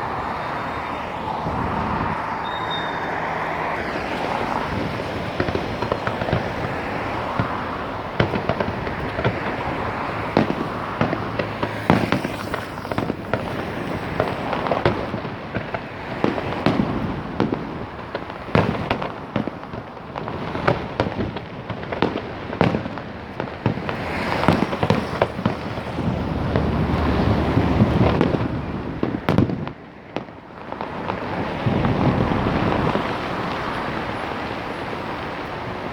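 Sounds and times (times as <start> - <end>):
rumble of echoing blasts: 0.0 - 20.2, 30.4 - 35.9
fireworks bangs and pops: 0.0 - 35.9.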